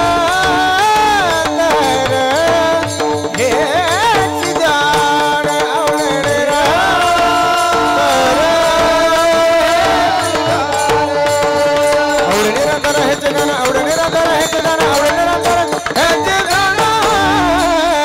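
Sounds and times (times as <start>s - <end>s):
harmonium tones: 0.0s - 18.0s
man singing a long note: 3.6s - 18.0s.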